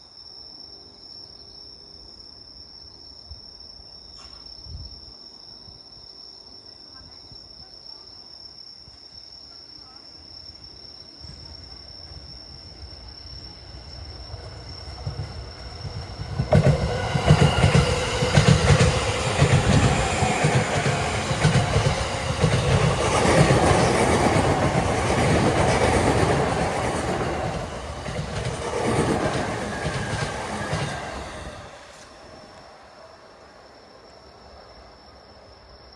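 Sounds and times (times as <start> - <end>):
electric train passing: 11.2 - 35.9.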